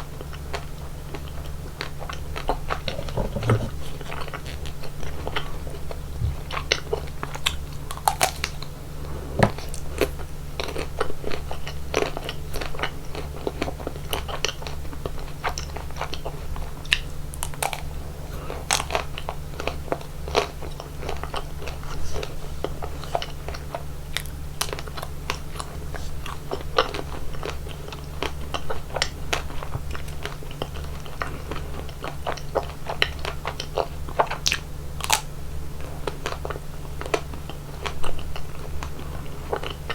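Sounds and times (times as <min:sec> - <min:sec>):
wet chewing: 0:00.3 - 0:39.9
crunching bites: 0:07.3 - 0:08.7.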